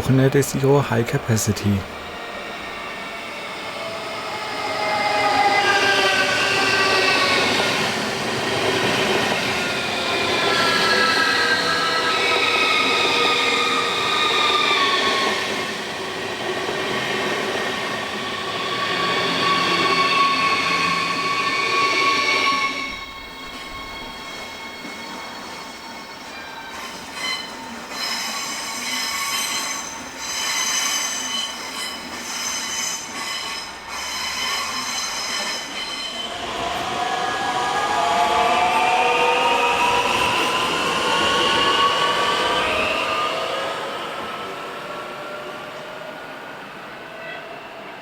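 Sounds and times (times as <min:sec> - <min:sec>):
rail noise: 0:00.0 - 0:48.0
electric train whining: 0:01.9 - 0:48.0
wheel squeal: 0:18.4 - 0:36.7.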